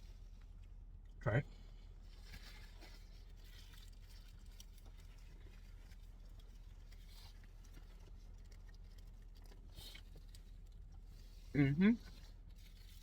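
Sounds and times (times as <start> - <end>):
low steady hum: 0.0 - 13.0
soft rustles: 1.7 - 13.0.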